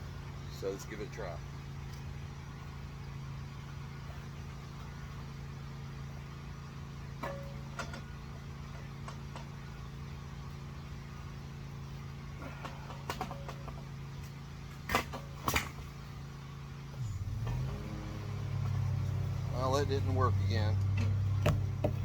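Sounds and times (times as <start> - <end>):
motor humming: 16.9 - 22.0.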